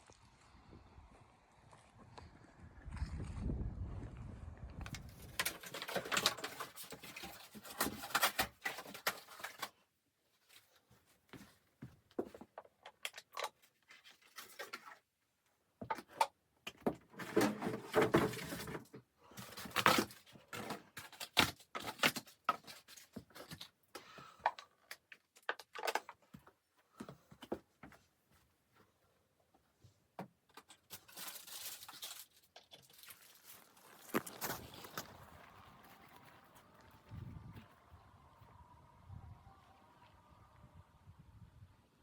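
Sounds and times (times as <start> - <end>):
handling rustling clicks and knocks: 4.9 - 9.8, 15.8 - 36.9.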